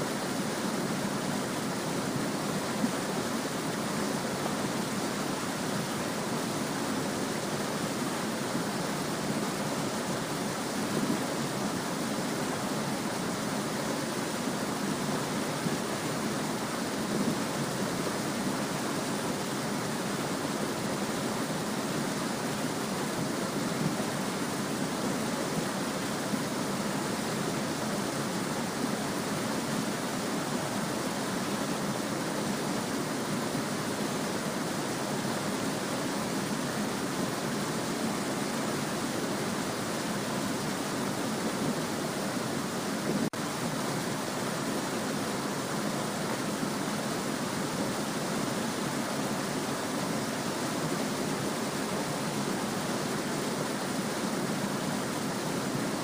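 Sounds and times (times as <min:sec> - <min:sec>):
stream babbling over stones: 0:00.0 - 0:56.0.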